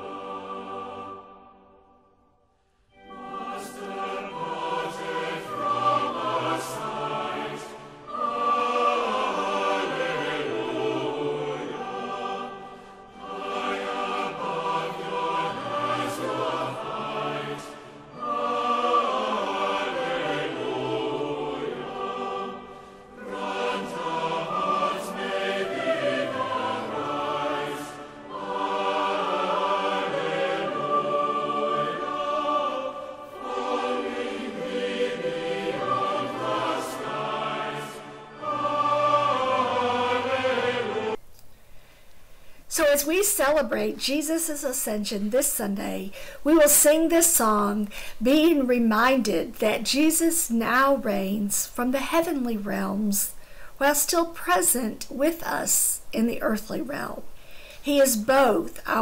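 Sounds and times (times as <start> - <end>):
choir singing a hymn: 0.0 - 41.2.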